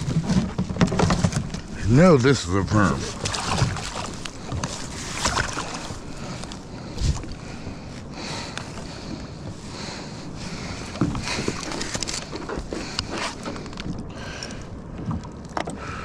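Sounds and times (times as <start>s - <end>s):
dull knocks against hull: 0.0s - 1.8s
water around kayak: 0.0s - 16.0s
wind: 0.0s - 16.0s.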